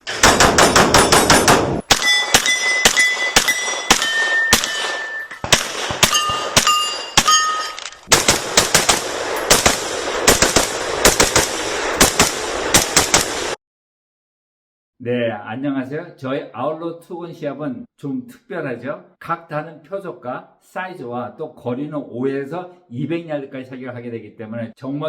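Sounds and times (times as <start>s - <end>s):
rapid gunfire: 0.0s - 7.4s, 8.1s - 13.6s
short ringing tones: 2.0s - 5.4s, 6.1s - 7.8s.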